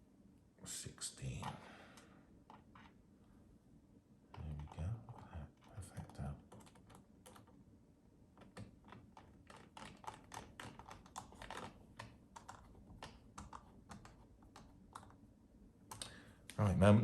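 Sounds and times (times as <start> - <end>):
laptop case and keys clicking: 6.5 - 7.6, 8.4 - 15.2.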